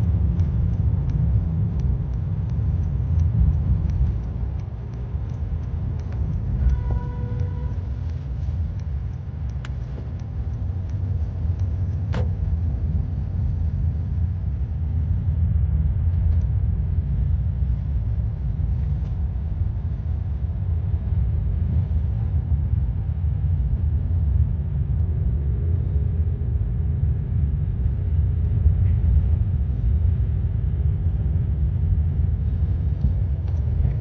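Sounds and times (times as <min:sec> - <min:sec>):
faint clicks: 0:00.0 - 0:14.2
car road and engine rumble: 0:00.0 - 0:34.0.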